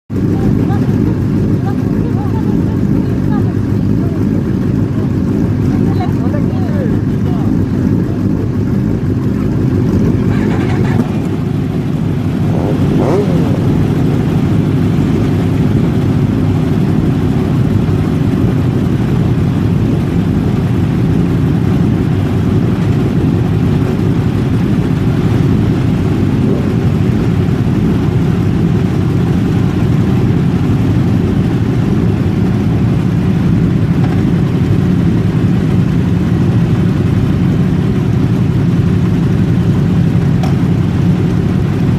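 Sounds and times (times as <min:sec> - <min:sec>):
engines rumbling: 0:00.1 - 0:41.9.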